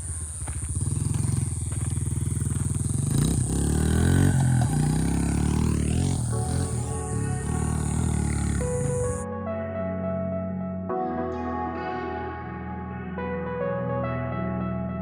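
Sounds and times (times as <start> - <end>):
motorbike engine revving: 0.0 - 9.2.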